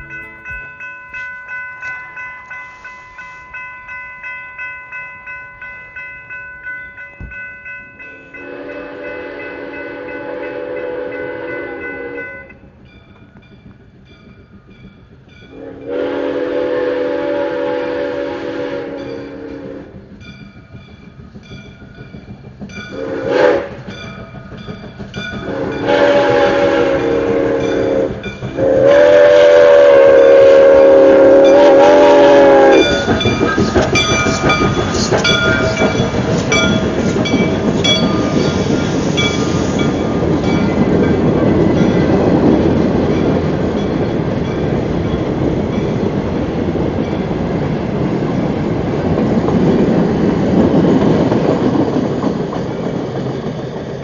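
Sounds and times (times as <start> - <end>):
wheels clicking over rail joints: 0.0 - 2.6, 32.8 - 54.0
train rolling past: 0.0 - 54.0
steam whistle blasts: 8.4 - 12.6, 15.5 - 20.0, 22.9 - 23.9, 25.4 - 34.4.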